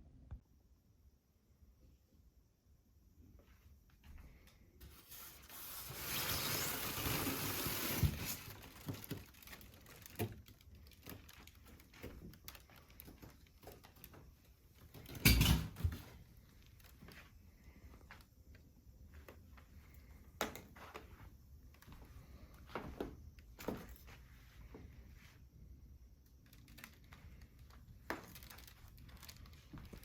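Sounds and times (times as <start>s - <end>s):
packaging rustling: 4.9s - 15.1s, 26.4s - 30.0s.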